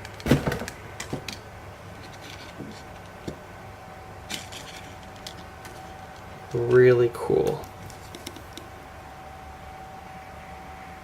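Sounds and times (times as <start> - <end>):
pins and packaging handled: 4.2 - 6.6.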